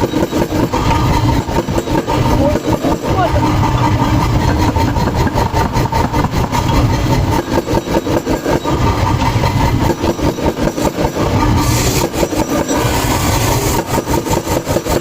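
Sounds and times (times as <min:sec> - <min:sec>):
hydraulic press pulsing: 0:00.0 - 0:15.0.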